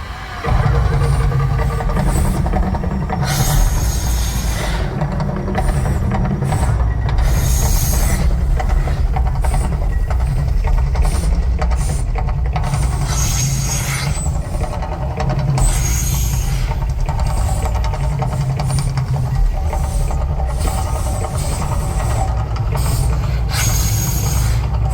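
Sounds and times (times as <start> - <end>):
deep rumble: 0.0 - 24.9
music: 0.0 - 24.9.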